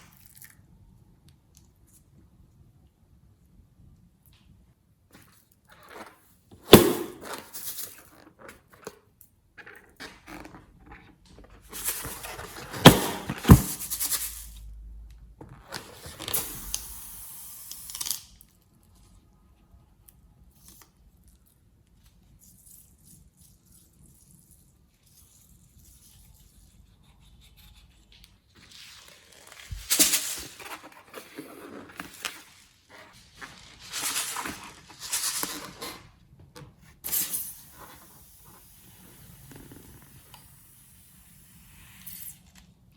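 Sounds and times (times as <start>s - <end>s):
scraping and rustling: 28.5s - 36.2s.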